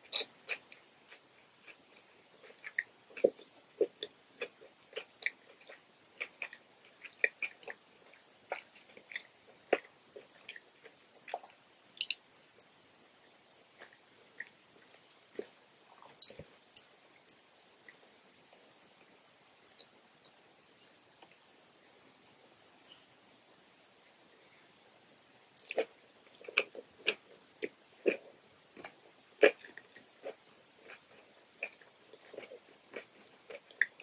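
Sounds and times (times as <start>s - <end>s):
crunchy chewing: 0.0s - 12.7s, 13.7s - 18.0s, 25.6s - 34.0s.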